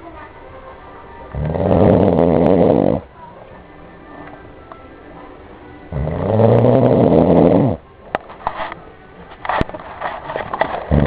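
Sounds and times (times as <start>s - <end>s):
loud snore: 1.3s - 3.1s, 5.9s - 7.8s.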